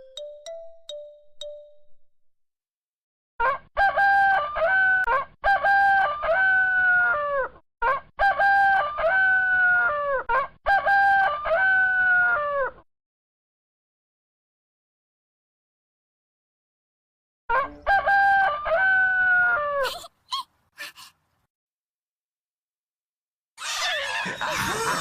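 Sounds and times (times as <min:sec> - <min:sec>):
rooster crowing: 0:03.4 - 0:12.8, 0:17.5 - 0:19.8.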